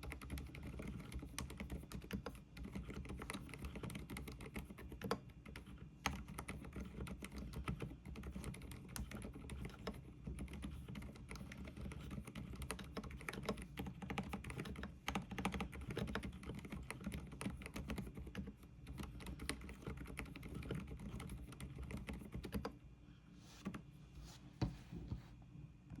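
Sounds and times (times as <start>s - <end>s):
typing on a keyboard: 0.0s - 22.8s.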